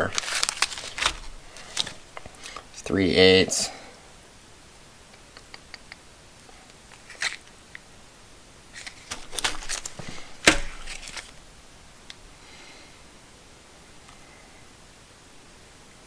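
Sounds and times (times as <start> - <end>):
plastic crinkles and clicks: 0.0 - 2.7, 6.7 - 7.9, 8.7 - 11.4
knock of packs set down: 9.1 - 11.3.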